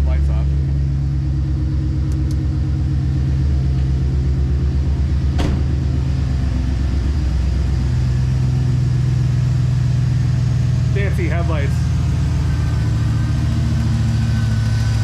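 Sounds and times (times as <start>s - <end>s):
engine idling with thudding misfire: 3.7s - 8.6s.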